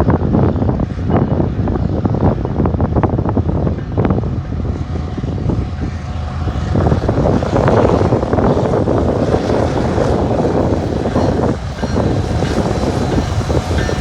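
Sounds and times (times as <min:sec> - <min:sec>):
train rumbling past: 0:00.0 - 0:14.0
wind on microphone: 0:00.0 - 0:14.0.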